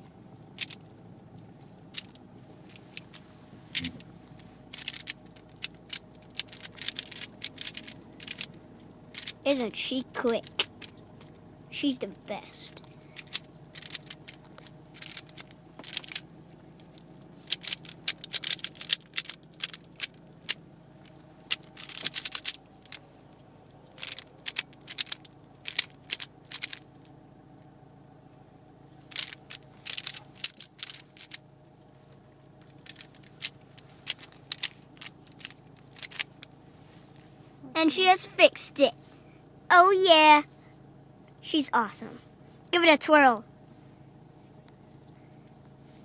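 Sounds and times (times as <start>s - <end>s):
plastic cube clicking: 0.6s - 0.8s, 4.7s - 8.5s, 9.2s - 9.4s, 13.2s - 16.2s, 17.5s - 20.2s, 21.5s - 23.0s, 24.0s - 26.8s, 29.1s - 31.4s, 32.8s - 36.3s.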